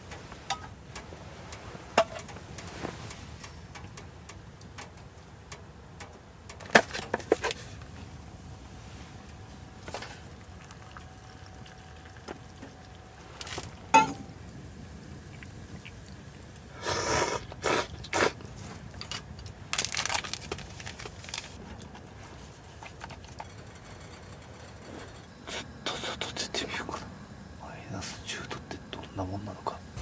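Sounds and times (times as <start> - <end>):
rustling and scraping: 0.0 - 3.8, 18.2 - 25.4.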